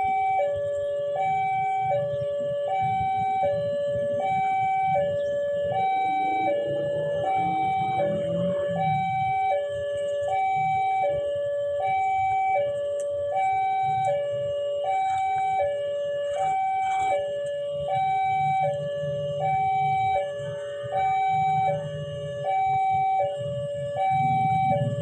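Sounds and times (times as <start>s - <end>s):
low engine rumble: 0.0s - 25.0s
two-tone level crossing alarm: 0.0s - 25.0s.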